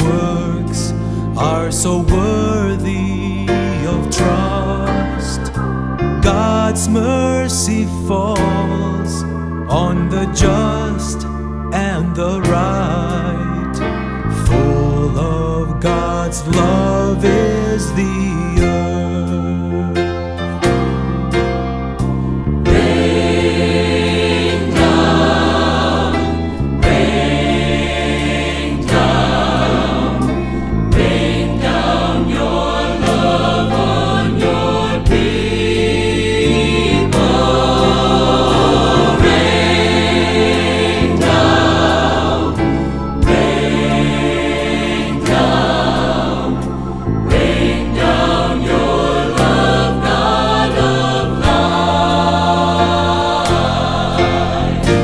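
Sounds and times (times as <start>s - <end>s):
choir singing a hymn: 0.0s - 55.0s
sustained bass notes: 0.0s - 55.0s
regular beat: 22.7s - 55.0s.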